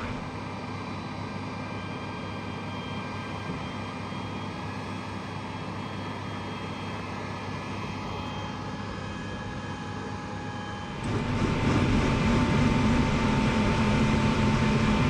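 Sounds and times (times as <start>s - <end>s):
faint high whining tones: 0.0s - 11.1s
aircraft engine drone: 0.0s - 15.0s.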